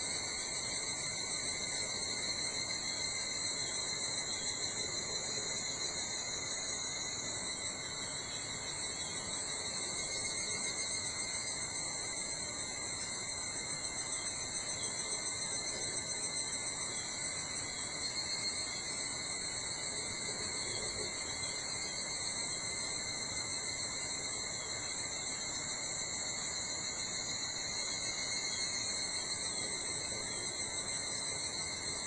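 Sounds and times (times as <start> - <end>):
insects trilling: 0.0 - 32.0.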